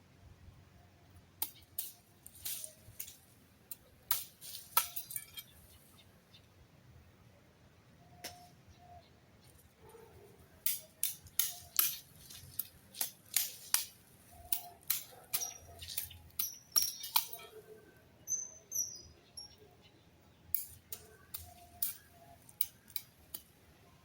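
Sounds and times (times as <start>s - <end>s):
faint high chirps: 14.3s - 22.8s
sharp clicks and snaps: 20.5s - 23.5s.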